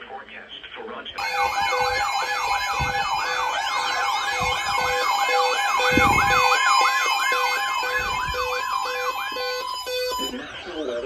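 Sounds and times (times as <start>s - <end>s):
electronic yelp alert tone: 1.2s - 11.0s
steady high tone: 1.2s - 11.0s
low pulsing beep: 5.3s - 11.0s.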